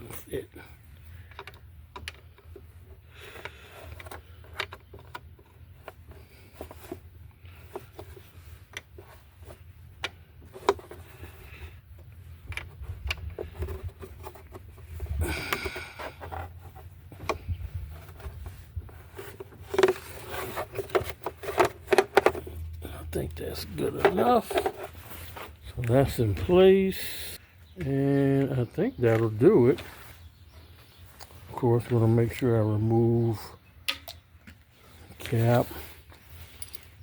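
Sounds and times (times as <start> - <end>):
loud scraping rustle: 17.7 - 22.6, 23.5 - 26.3.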